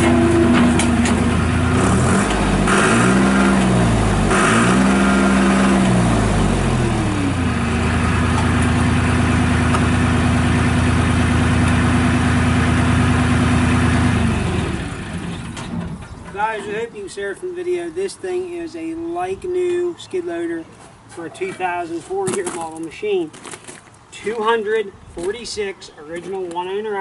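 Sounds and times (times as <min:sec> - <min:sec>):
diesel engine running: 0:00.0 - 0:16.3.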